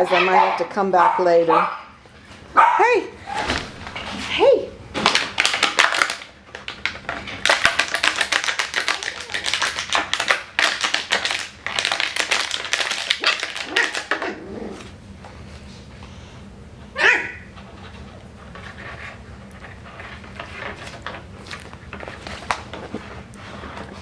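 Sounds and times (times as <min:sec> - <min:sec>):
puppy yip: 0:17.0 - 0:17.5.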